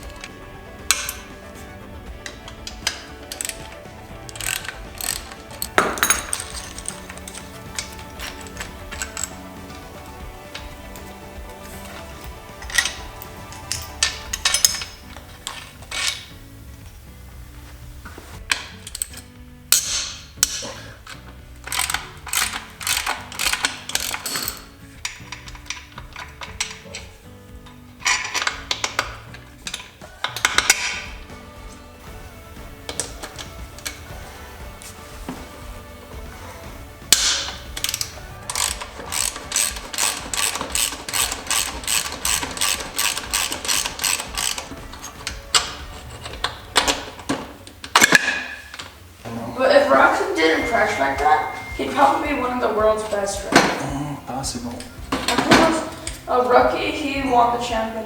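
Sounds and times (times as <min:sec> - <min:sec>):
hand tools clicking and rattling: 0:00.0 - 0:49.2, 0:50.0 - 0:58.0
background music: 0:00.0 - 0:58.0.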